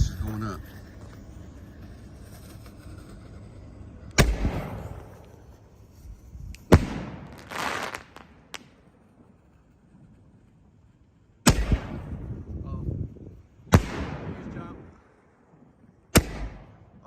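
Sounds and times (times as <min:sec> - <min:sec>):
firework crackling hiss: 0:04.1 - 0:10.9
firework mortar booms: 0:04.2 - 0:05.2, 0:06.7 - 0:08.8, 0:11.4 - 0:12.5, 0:13.7 - 0:14.8, 0:16.1 - 0:17.0
firework bang: 0:04.2 - 0:05.3, 0:06.7 - 0:08.8.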